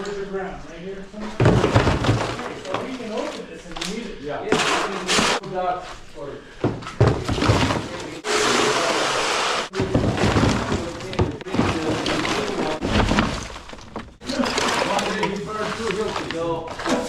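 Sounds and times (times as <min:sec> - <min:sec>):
junk debris crashing and clattering: 0:01.4 - 0:03.4, 0:07.0 - 0:08.2, 0:09.7 - 0:17.0.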